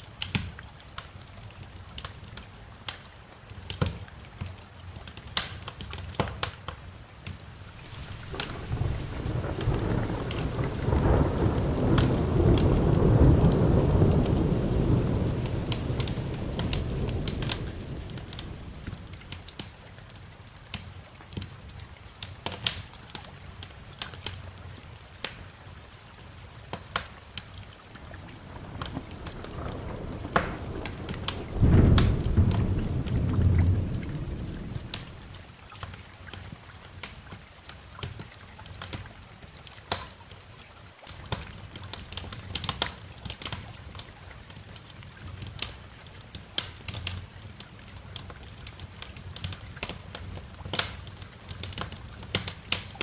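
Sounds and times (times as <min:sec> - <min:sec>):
steady rain: 0:00.0 - 0:53.0
wood fire crackling: 0:00.0 - 0:53.0
thunder rumbling: 0:07.7 - 0:20.4, 0:27.6 - 0:35.6.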